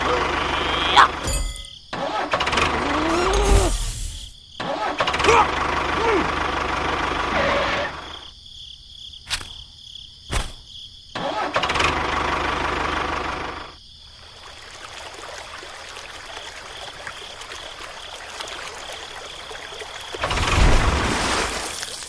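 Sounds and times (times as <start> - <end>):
small motor running: 3.1 - 4.3.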